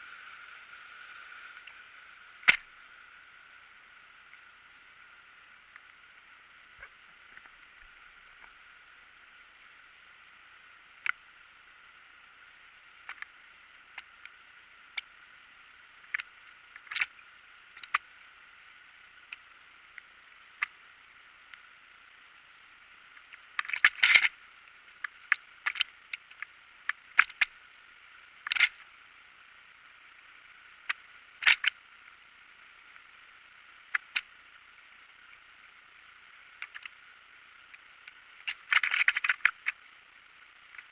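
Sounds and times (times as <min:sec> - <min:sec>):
sharp clicks and crackles: 0:02.4 - 0:02.7, 0:11.0 - 0:11.2, 0:12.8 - 0:15.2, 0:16.0 - 0:18.2, 0:23.1 - 0:29.0, 0:29.8 - 0:31.9, 0:32.8 - 0:40.9.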